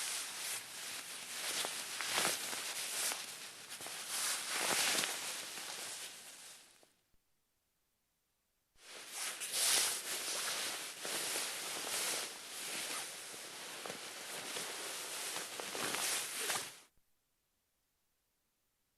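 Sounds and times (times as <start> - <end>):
nylon clothing rustling: 0.0 - 6.9, 8.8 - 16.9.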